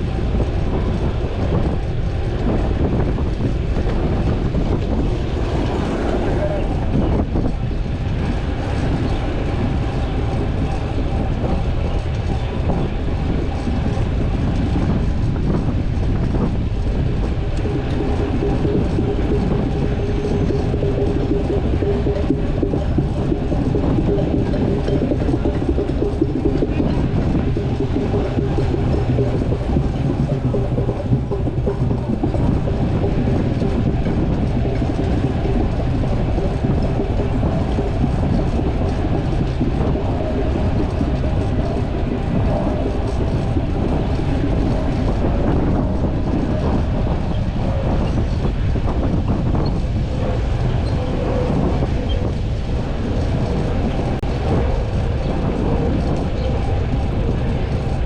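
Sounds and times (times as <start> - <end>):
bicycle tyre road noise: 0.0 - 58.0
wind on microphone: 0.0 - 58.0.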